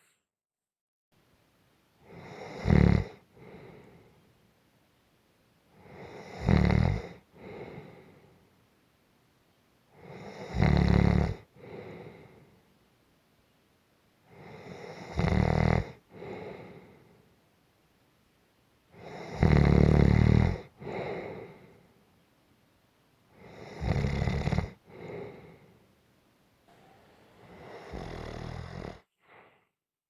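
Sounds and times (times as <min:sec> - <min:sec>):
person snoring: 0:02.1 - 0:04.0, 0:05.8 - 0:08.2, 0:10.0 - 0:12.3, 0:14.4 - 0:17.0, 0:19.0 - 0:21.7, 0:23.4 - 0:25.7, 0:26.7 - 0:29.5.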